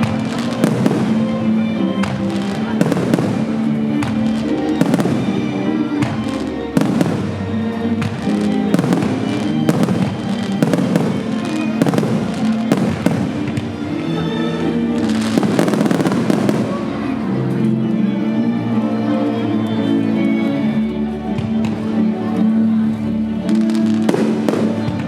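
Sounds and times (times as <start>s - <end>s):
fireworks bursting with sharp bangs: 0.0s - 17.6s, 23.5s - 25.0s
loud music with sustained notes: 0.0s - 25.0s.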